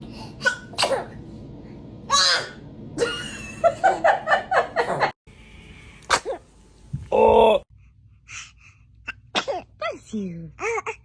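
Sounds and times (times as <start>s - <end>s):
person laughing: 3.0s - 5.1s.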